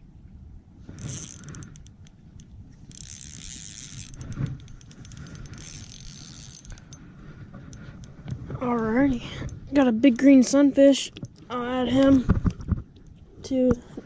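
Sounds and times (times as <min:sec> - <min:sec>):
low wind rumble: 0:00.0 - 0:14.0
fishing reel clicking: 0:01.0 - 0:07.1.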